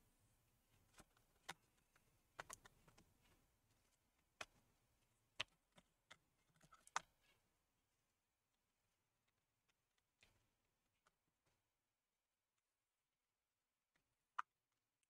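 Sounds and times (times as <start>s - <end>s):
clicks and taps of small parts: 0.9s - 3.1s.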